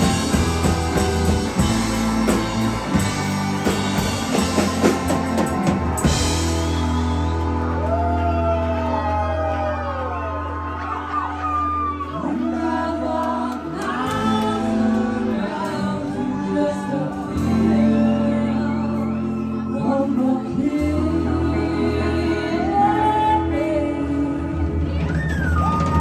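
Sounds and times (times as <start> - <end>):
live band playing: 0.0 - 9.1
person singing: 12.0 - 25.0.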